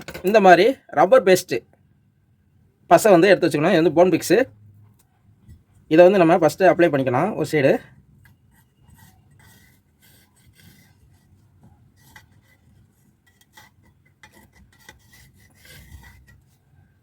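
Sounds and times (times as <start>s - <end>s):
glue rubbing and scraping: 8.3s - 16.8s.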